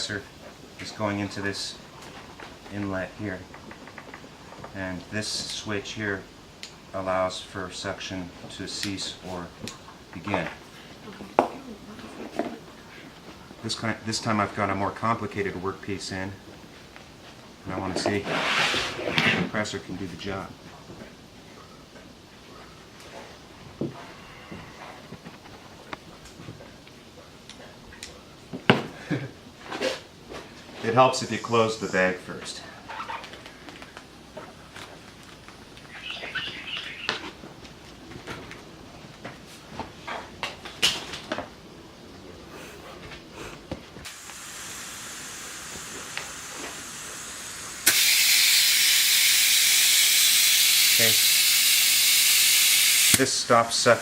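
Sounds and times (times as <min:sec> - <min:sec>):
faint hiss: 0:00.0 - 0:37.9, 0:38.8 - 0:54.0
compressed air hissing: 0:30.8 - 0:32.9, 0:42.5 - 0:53.4.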